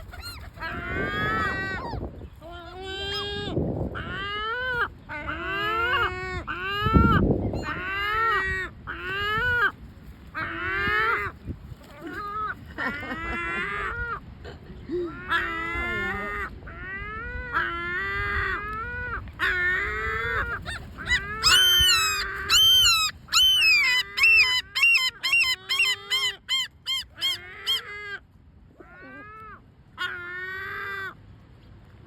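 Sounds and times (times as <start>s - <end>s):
gulls calling: 15.1s - 27.9s.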